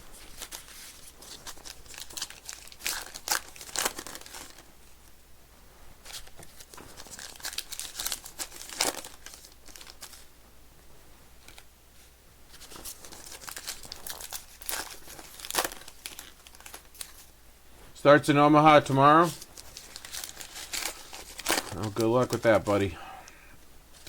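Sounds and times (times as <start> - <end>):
card pack wrappers crinkling and tearing: 0.1 - 4.7, 6.0 - 10.2, 11.4 - 11.7, 12.5 - 17.3, 18.6 - 24.0.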